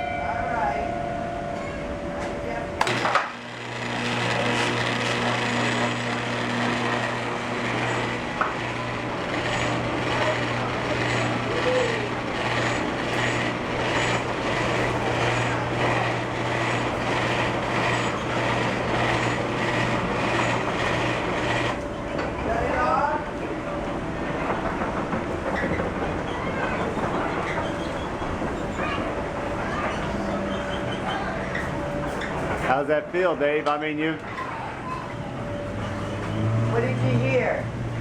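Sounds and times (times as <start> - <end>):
mechanical rumble: 0.8 - 22.8, 23.5 - 32.8
motor hum: 1.2 - 23.0.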